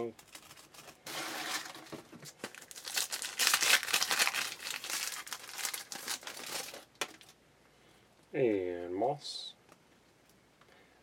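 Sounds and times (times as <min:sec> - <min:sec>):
card pack wrapper crinkling: 0:00.0 - 0:07.4.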